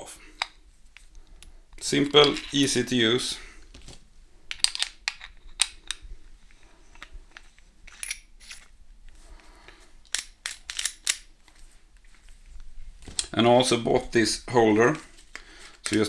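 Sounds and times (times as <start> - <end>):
gear handling clicks and knocks: 0.4 - 2.8, 3.7 - 12.3, 15.3 - 16.0.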